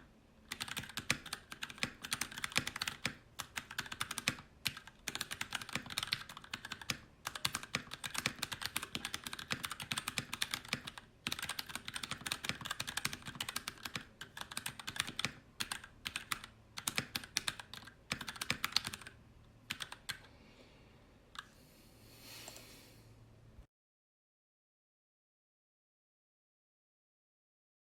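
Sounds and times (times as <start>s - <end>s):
typing on mechanical keyboard: 0.0s - 20.2s.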